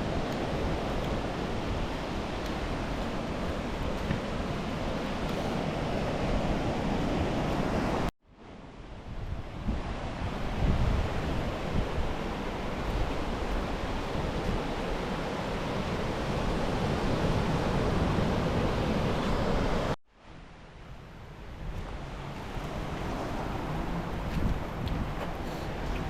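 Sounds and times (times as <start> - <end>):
wind buffeting microphone: 8.9 - 20.0, 21.4 - 26.0.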